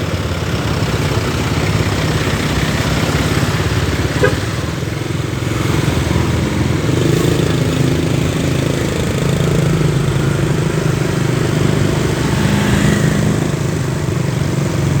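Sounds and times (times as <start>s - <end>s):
vehicle engine idling: 0.0s - 12.8s.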